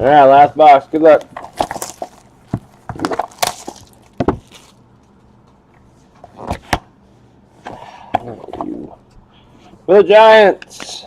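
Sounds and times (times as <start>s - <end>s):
cardboard box tearing open: 1.4s - 2.3s, 2.9s - 4.8s.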